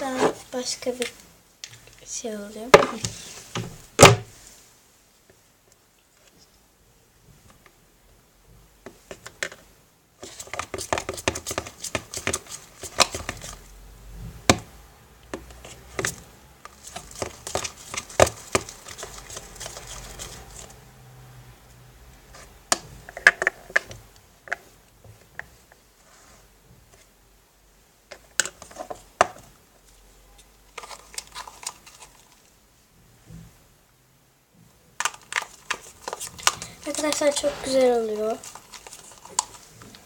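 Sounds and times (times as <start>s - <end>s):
slime scraping: 15.4s - 20.8s, 30.3s - 32.5s, 35.0s - 40.0s.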